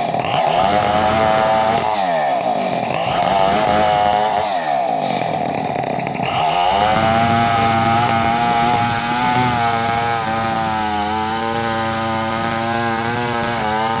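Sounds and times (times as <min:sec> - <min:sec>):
chainsaw engine at high revs: 0:00.0 - 0:14.0.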